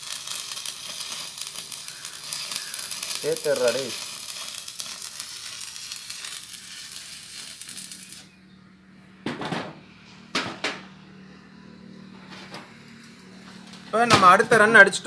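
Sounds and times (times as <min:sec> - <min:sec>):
welding arc crackling and sizzling: 0:00.0 - 0:08.3.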